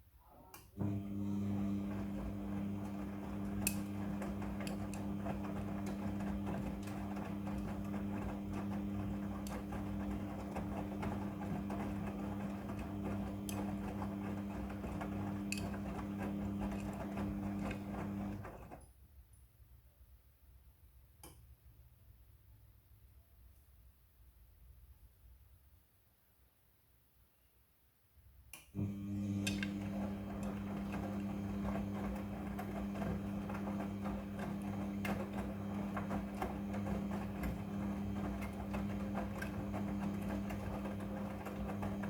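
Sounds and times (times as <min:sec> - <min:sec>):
washing machine humming: 0:00.7 - 0:18.8, 0:28.8 - 0:42.0.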